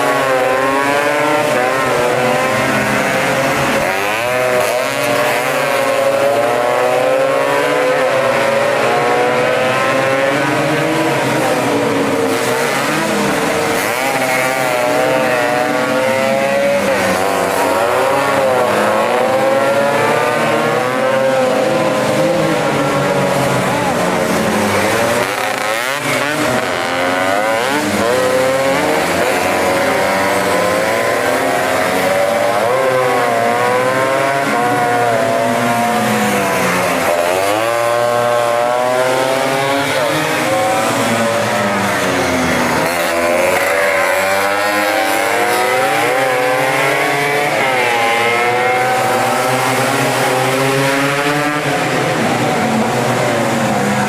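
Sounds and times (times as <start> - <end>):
two-stroke scooter engines revving: 0.0 - 54.0.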